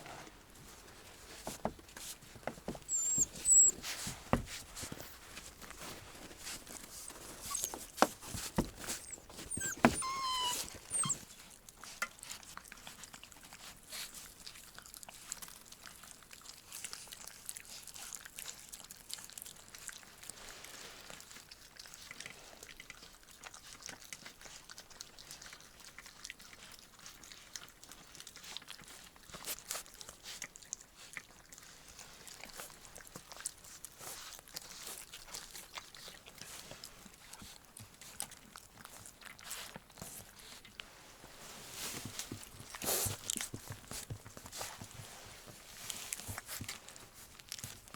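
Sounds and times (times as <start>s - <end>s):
puppy whining: 1.5s - 5.2s, 6.8s - 11.4s
puppy hiccuping: 2.8s - 3.8s, 8.6s - 11.2s.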